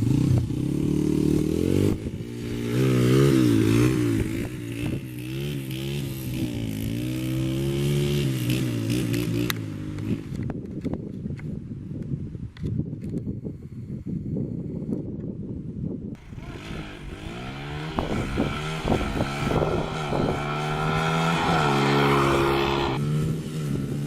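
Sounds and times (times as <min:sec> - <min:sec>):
dirt bike engine revving: 0:00.0 - 0:10.3, 0:16.2 - 0:24.0.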